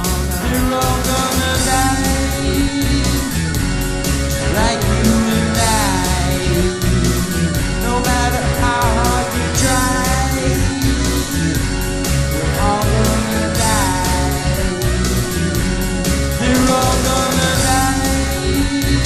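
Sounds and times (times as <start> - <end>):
instrumental rock song: 0.0 - 19.0.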